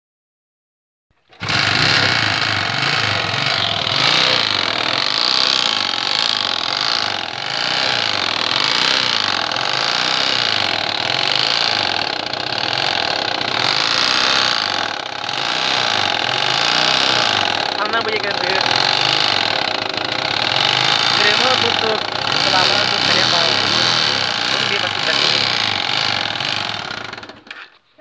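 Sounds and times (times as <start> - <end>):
motorcycle engine running: 1.3 - 27.5
rapid engine knocking: 1.4 - 27.5.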